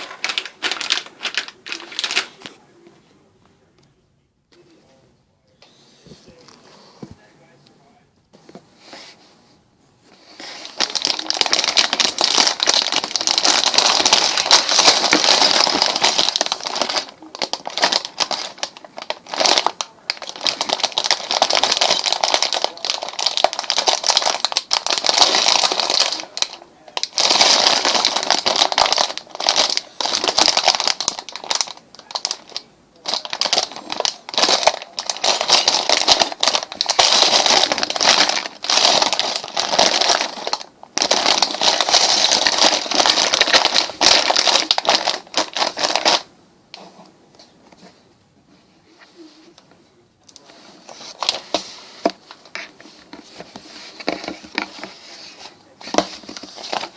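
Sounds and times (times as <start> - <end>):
packaging crinkling and rustling: 0.0 - 2.6, 10.2 - 46.3, 50.3 - 56.9.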